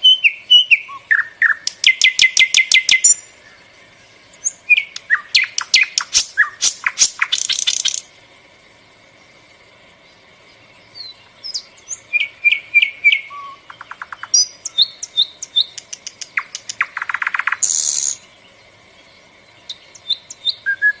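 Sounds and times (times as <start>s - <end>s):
bulbul singing: 0.0s - 21.0s
bird rattling trills: 4.4s - 8.1s, 11.9s - 18.2s.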